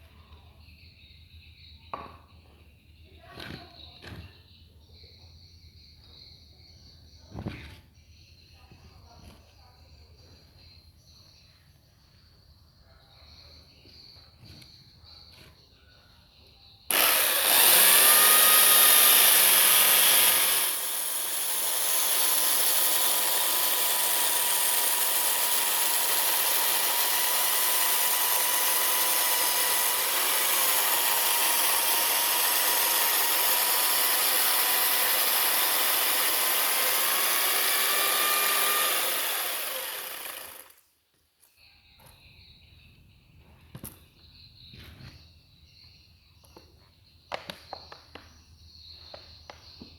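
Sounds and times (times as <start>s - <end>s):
power carving tool cutting wood: 16.9s - 40.8s.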